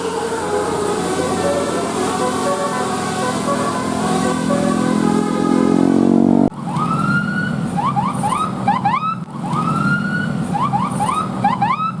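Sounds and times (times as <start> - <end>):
air horns playing a tune: 0.0 - 6.5.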